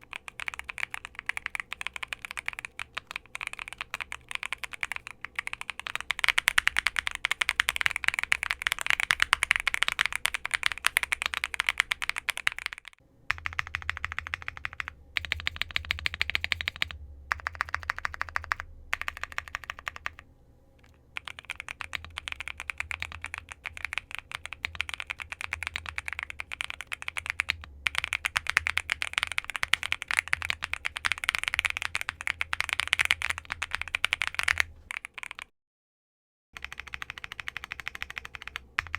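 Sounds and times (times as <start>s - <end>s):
mechanical keyboard typing: 0.0s - 20.2s, 20.8s - 35.5s, 36.6s - 38.9s.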